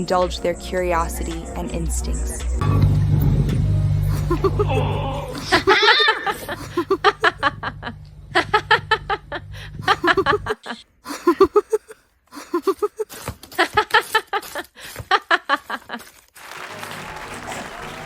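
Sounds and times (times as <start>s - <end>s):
person laughing: 4.1s - 7.6s, 9.8s - 14.2s.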